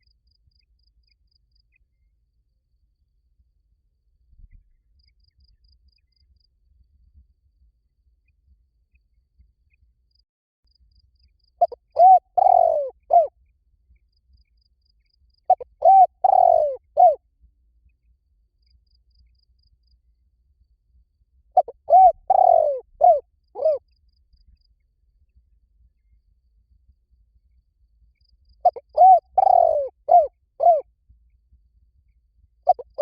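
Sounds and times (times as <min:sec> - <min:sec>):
dove cooing: 0:11.6 - 0:13.3, 0:15.5 - 0:17.2, 0:21.6 - 0:23.8, 0:28.6 - 0:30.8, 0:32.7 - 0:33.0.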